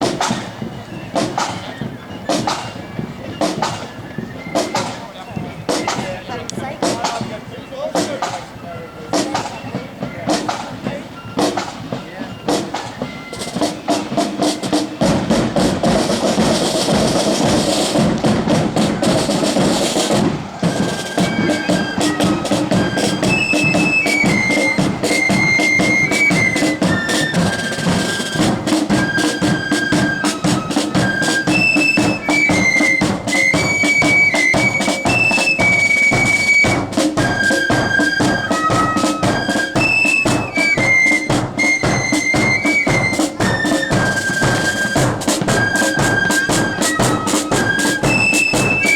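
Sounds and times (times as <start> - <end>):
flutes playing high tune: 0.0 - 48.9
marching band drums: 0.0 - 48.9.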